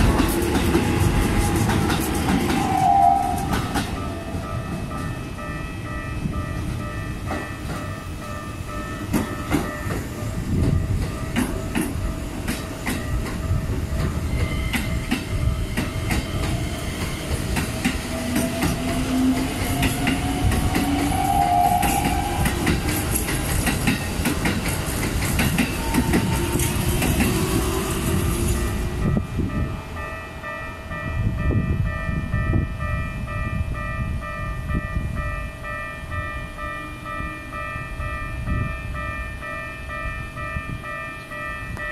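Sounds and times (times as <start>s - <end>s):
train wheels clacking over rail joints: 0.0s - 4.1s, 9.0s - 28.6s
crossing warning bell ringing: 0.0s - 41.9s
train rumble: 0.0s - 41.9s.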